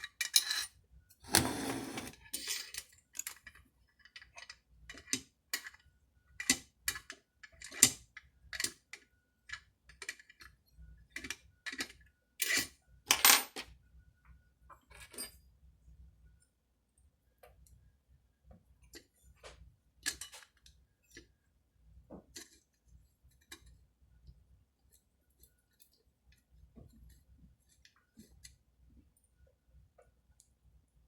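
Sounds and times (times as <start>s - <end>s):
metal tools clicking and clinking: 0.0s - 0.7s.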